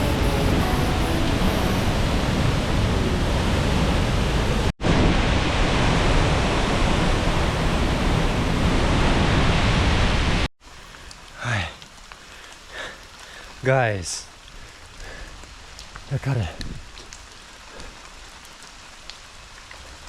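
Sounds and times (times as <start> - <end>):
waterfall rushing: 0.0 - 4.6.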